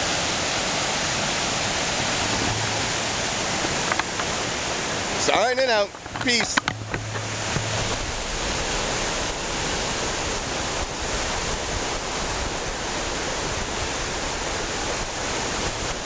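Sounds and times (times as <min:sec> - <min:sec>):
river rushing: 0:00.0 - 0:16.0.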